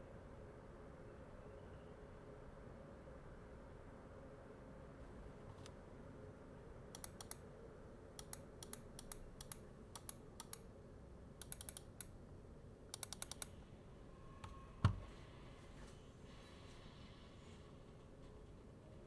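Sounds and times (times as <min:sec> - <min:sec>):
keyboard typing: 0:07.0 - 0:07.4, 0:08.2 - 0:10.7, 0:11.4 - 0:12.1, 0:12.9 - 0:13.6.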